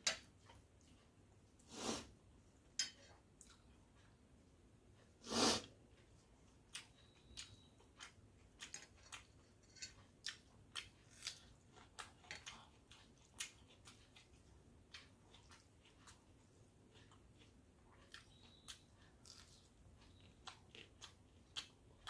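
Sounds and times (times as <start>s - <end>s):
wet chewing clicks and smacks: 6.7s - 9.4s, 10.0s - 22.0s.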